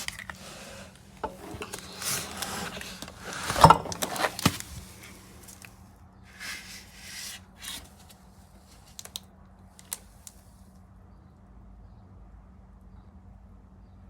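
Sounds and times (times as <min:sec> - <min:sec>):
rustling and handling noises: 0:00.0 - 0:09.2, 0:09.8 - 0:10.6.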